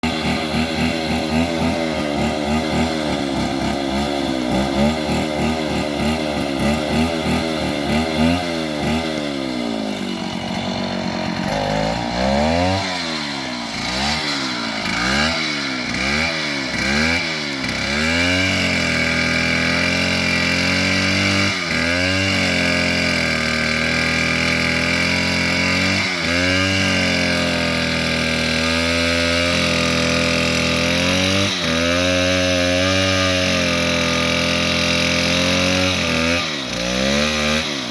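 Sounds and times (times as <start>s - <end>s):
bulldozer diesel engine running: 8.8s - 18.3s.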